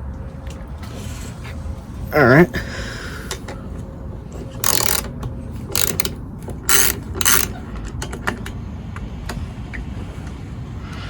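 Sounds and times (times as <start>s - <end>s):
socket ratchet clicking: 4.6s - 5.1s, 5.7s - 7.5s.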